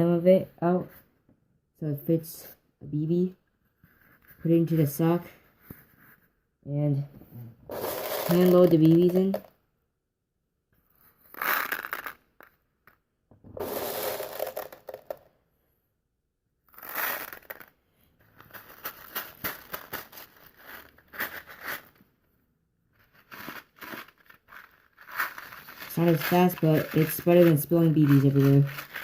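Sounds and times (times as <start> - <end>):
paper cup crinkling: 7.7 - 9.5, 13.6 - 15.2, 16.8 - 22.0, 23.0 - 29.0
plastic pellets clicking: 7.7 - 9.5, 11.3 - 12.5, 13.6 - 15.2, 16.7 - 17.7, 18.4 - 21.9, 23.2 - 29.0.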